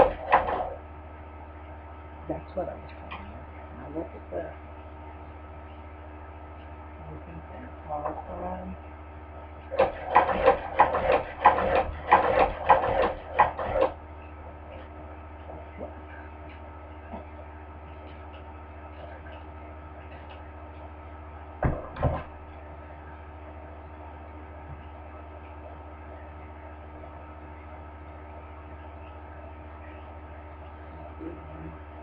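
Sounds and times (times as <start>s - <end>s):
sewing machine clacking: 0.0s - 0.8s, 9.7s - 14.0s
steady low hum: 0.0s - 32.0s.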